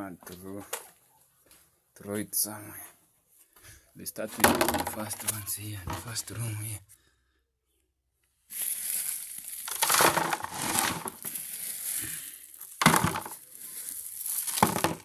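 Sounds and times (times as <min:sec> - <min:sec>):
rubbish and sand scraping: 0:08.5 - 0:15.0.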